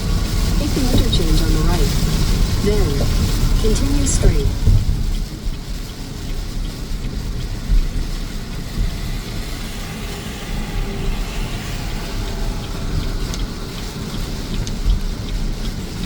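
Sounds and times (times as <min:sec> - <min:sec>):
car engine and road rumble: 0:00.0 - 0:16.0
rain ticking on car: 0:00.0 - 0:16.0.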